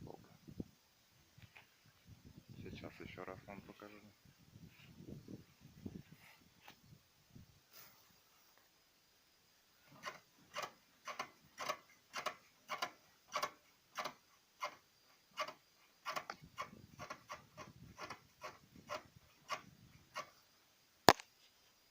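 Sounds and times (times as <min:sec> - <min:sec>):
rubber suspension bushing squeaking: 0:09.9 - 0:20.4.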